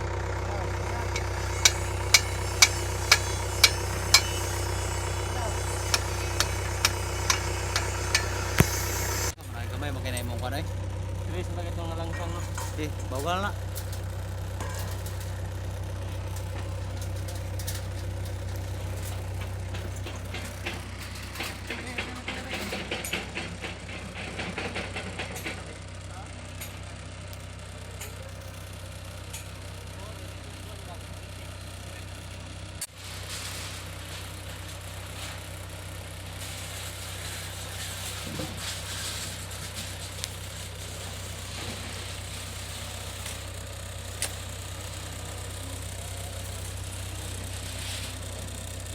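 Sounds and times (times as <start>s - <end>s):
diesel engine idling: 0.0s - 48.9s
rattly noise: 0.1s - 26.9s.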